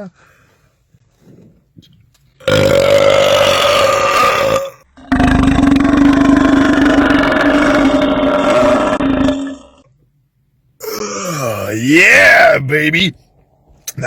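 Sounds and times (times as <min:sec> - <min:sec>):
man belching: 0:02.4 - 0:09.9, 0:10.8 - 0:12.5.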